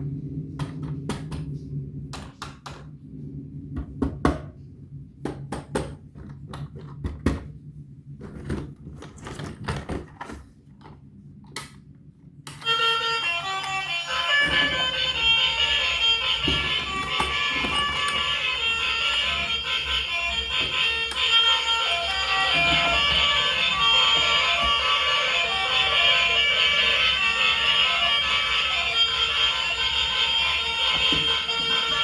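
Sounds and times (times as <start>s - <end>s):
low steady hum: 0.0s - 32.0s
melodic music: 12.6s - 32.0s.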